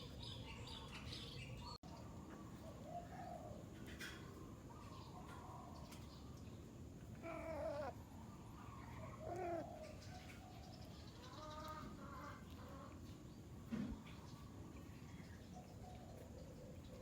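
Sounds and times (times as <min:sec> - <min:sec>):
cat meowing: 0:07.2 - 0:07.9.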